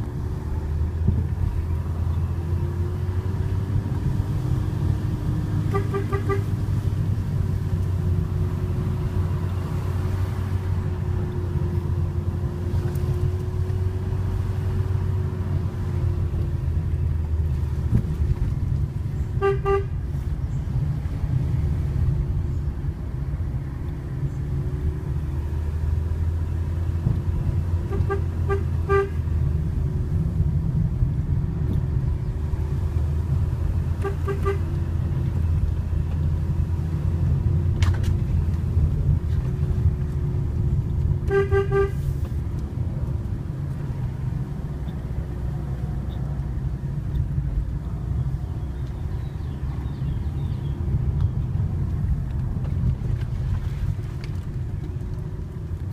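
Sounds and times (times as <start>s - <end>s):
car engine and tyre drone: 0.0s - 55.9s
car horn toots: 5.7s - 6.5s, 19.4s - 20.0s, 27.8s - 29.2s, 34.0s - 34.8s, 41.2s - 42.1s.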